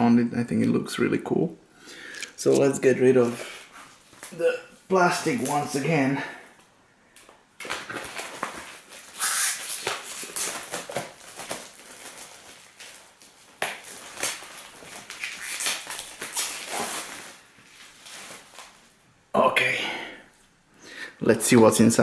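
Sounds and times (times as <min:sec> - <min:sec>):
plastic shrink-wrap tearing and crinkling: 0:07.6 - 0:19.0.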